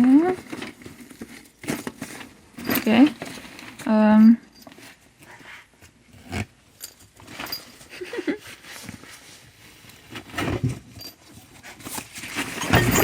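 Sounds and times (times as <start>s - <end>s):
hand tools clinking in a bag: 0.0s - 3.9s, 6.7s - 8.7s, 10.7s - 13.0s.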